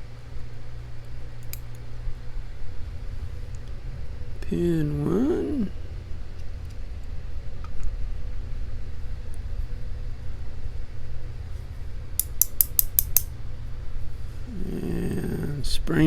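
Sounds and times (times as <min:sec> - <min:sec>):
steady low hum: 0:00.0 - 0:16.0
small sharp metallic clicks: 0:01.4 - 0:01.8, 0:12.2 - 0:13.4.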